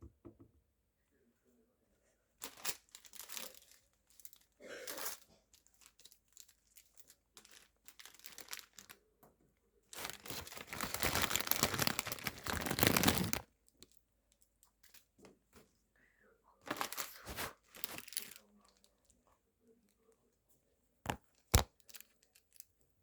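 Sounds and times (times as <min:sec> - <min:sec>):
plastic packet crinkling: 0:02.4 - 0:09.0, 0:10.0 - 0:13.5, 0:16.7 - 0:18.8, 0:21.1 - 0:22.7
plastic tearing: 0:02.4 - 0:09.0, 0:10.0 - 0:13.5, 0:16.7 - 0:18.5, 0:21.1 - 0:22.6.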